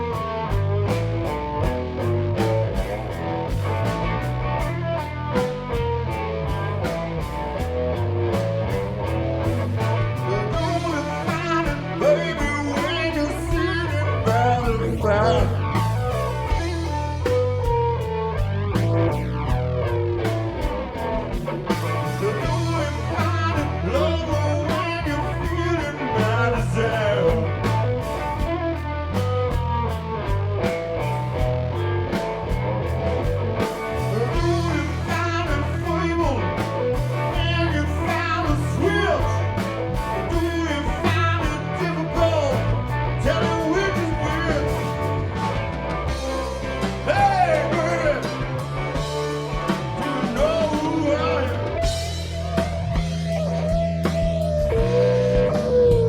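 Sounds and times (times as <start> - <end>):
bass line: 0.0 - 56.0
drums: 0.0 - 56.0
electric guitar bending notes: 0.0 - 56.0.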